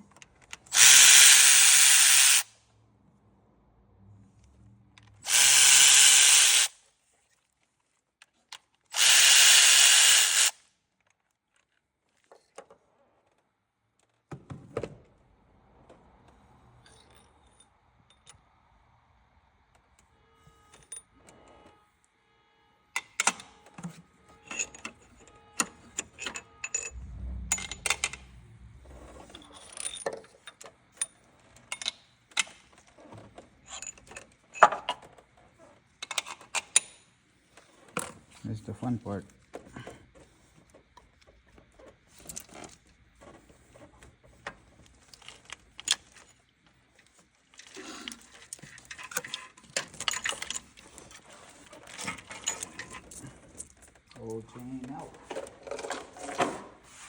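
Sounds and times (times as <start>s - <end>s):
power tool hissing bursts: 0.8s - 2.5s, 5.3s - 6.7s, 9.0s - 10.6s.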